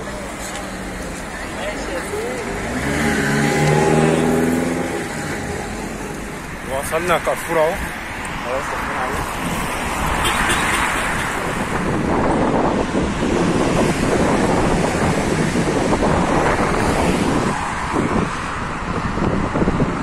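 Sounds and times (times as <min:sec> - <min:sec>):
wind buffeting microphone: 0:09.0 - 0:20.0.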